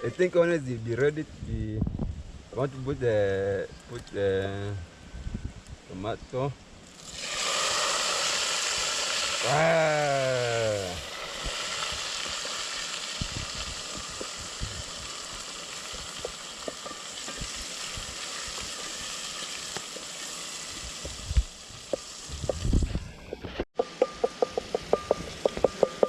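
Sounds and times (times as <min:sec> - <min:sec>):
onions sizzling in oil: 0:06.8 - 0:22.9
stirring knocks: 0:23.8 - 0:26.0.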